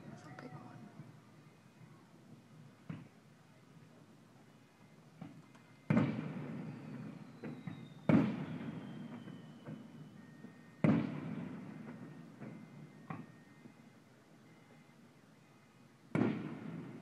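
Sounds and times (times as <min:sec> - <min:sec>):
fireworks booming: 0:02.8 - 0:03.2, 0:05.1 - 0:13.4, 0:16.1 - 0:17.0
faint fireworks pops: 0:02.8 - 0:03.3, 0:05.1 - 0:13.4, 0:16.1 - 0:17.0.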